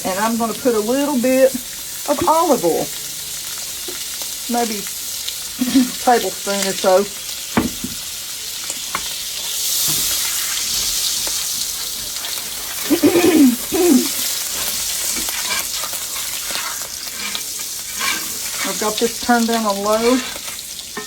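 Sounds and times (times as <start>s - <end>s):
oil sizzling in a skillet: 0.0s - 21.0s.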